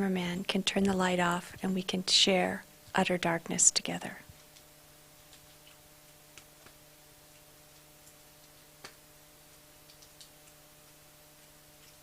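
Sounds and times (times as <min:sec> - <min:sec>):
faint steady hum: 0:00.0 - 0:12.0
water dripping: 0:05.3 - 0:12.0.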